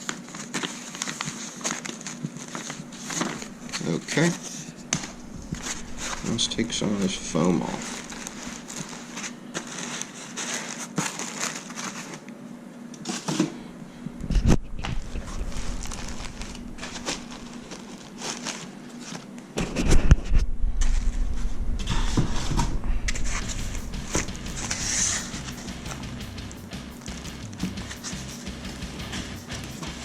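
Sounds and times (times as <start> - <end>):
packing foam rustling and crinkling: 0.0 - 12.3, 14.3 - 20.0.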